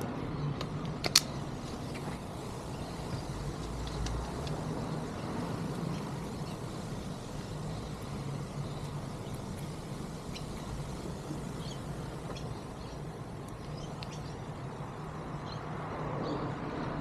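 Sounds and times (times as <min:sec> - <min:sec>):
low background rumble and hum: 0:00.0 - 0:17.0
faint high chirps and ticks: 0:01.9 - 0:14.5.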